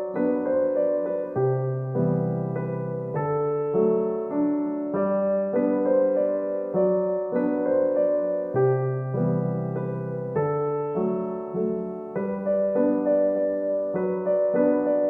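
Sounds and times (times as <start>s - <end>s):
slow piano music: 0.0s - 15.0s.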